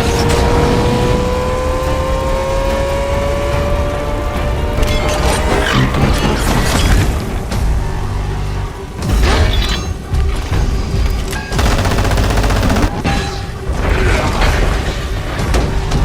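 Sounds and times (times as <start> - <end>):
action film score: 0.0 - 16.0
machine-gun fire: 11.6 - 13.0.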